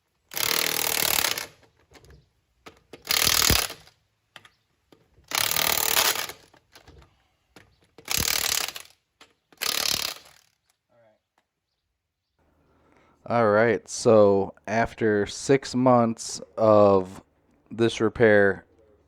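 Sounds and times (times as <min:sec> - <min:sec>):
impact wrench bursts: 0:00.1 - 0:04.5, 0:05.2 - 0:07.0, 0:07.9 - 0:10.7.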